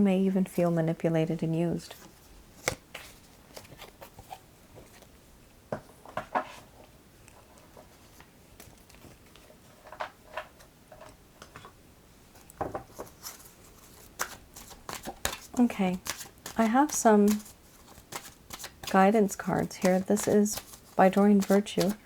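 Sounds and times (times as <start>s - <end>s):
cards handled on a table: 1.9s - 5.1s, 12.7s - 22.0s.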